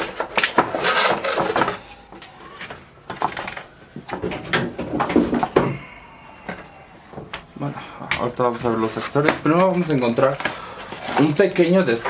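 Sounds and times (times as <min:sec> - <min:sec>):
packaging rustling: 0:00.0 - 0:03.8, 0:08.6 - 0:12.0.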